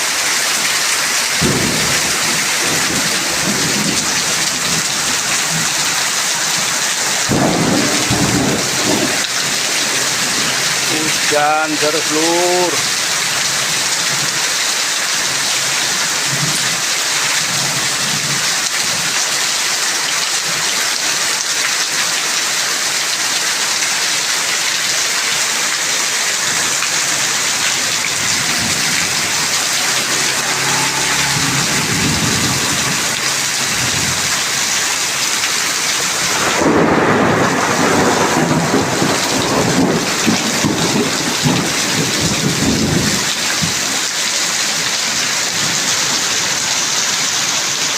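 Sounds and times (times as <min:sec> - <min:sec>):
heavy rain pouring: 0:00.0 - 0:47.9
thunder rumbling: 0:01.4 - 0:06.6, 0:07.2 - 0:11.4, 0:26.3 - 0:43.8.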